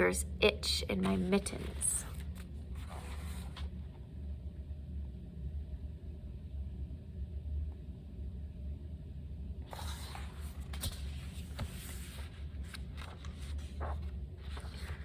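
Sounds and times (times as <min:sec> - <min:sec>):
steady low hum: 0:00.0 - 0:15.0
book pages rustling and turning: 0:01.0 - 0:03.9, 0:09.7 - 0:15.0.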